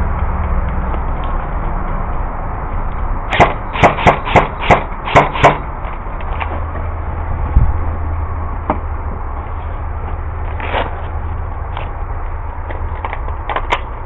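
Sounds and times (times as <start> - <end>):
airsoft gun shots: 3.3 - 5.6.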